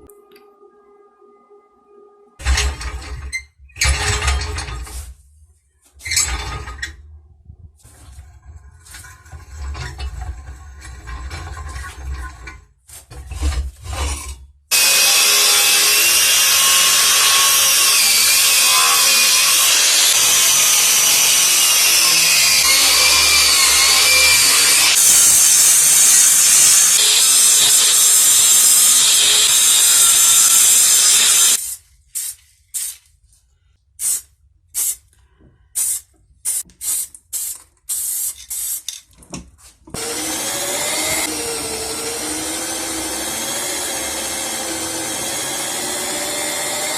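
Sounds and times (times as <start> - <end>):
power tool working on metal: 14.7 - 31.6, 40.0 - 46.9.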